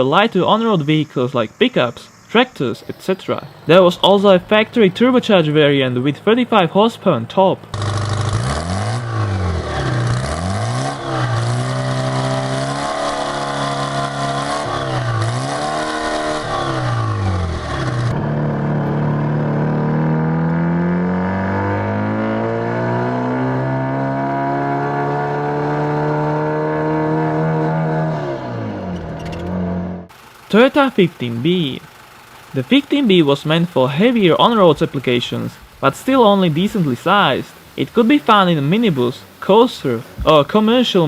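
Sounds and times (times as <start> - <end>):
diesel engine pulling under load: 0.0 - 41.0
diesel engine revving: 0.0 - 41.0.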